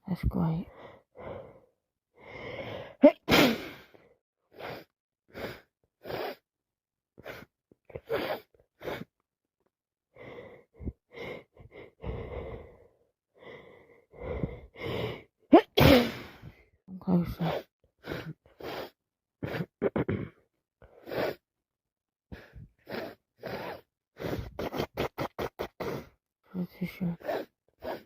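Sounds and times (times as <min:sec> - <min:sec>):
heavy breathing: 0:00.7 - 0:03.0, 0:10.1 - 0:15.3, 0:22.3 - 0:24.8, 0:26.8 - 0:28.0
person sneezing: 0:03.0 - 0:03.8, 0:15.6 - 0:16.5
person sniffing: 0:03.3 - 0:03.8, 0:21.0 - 0:21.4, 0:22.8 - 0:26.2, 0:27.2 - 0:28.0.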